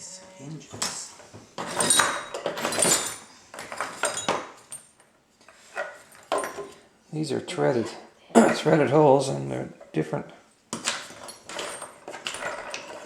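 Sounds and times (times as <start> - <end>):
metal hinges clinking and scraping: 1.6 - 6.8, 10.8 - 13.0.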